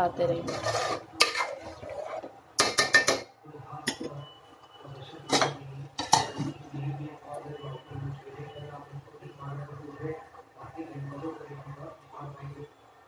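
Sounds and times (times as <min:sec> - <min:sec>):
metal ladle clinking against pot: 0:02.6 - 0:04.2, 0:05.3 - 0:06.6.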